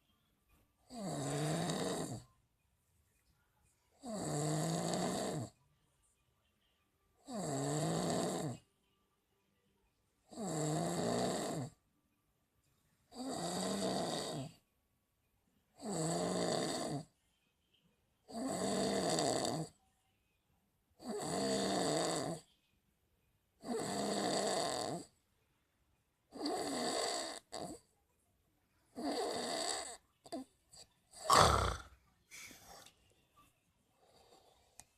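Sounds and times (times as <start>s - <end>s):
rhythmic snoring: 0.8s - 2.3s, 3.9s - 5.6s, 7.2s - 8.7s, 10.2s - 11.8s, 13.1s - 14.6s, 15.7s - 17.2s, 18.2s - 19.8s, 21.0s - 22.5s, 23.6s - 25.2s, 26.3s - 27.9s, 28.9s - 32.0s, 34.0s - 34.9s.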